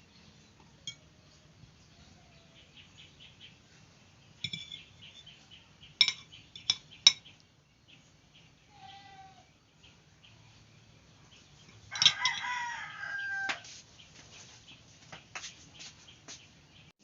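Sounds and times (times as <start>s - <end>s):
metal utensil clinking on pot: 4.4s - 4.9s, 6.0s - 7.3s, 11.7s - 12.5s.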